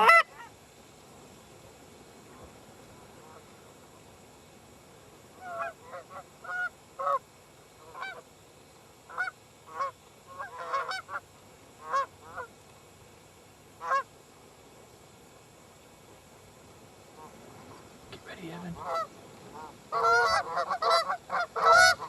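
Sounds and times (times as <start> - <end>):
geese honking: 0.0 - 0.5, 5.4 - 7.2, 7.8 - 8.2, 9.1 - 11.2, 11.8 - 12.5, 13.8 - 14.1, 17.2 - 22.0.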